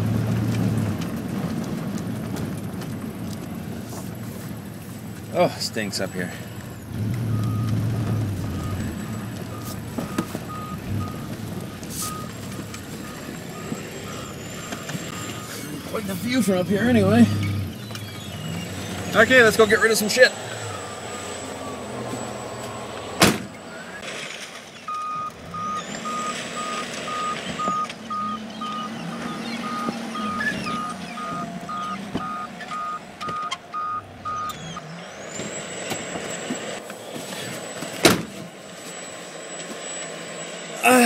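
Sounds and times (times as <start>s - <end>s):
truck engine running: 0.0s - 41.0s
electronic warning beeps: 6.6s - 24.0s, 24.9s - 36.5s
sharp bang: 23.2s - 24.2s.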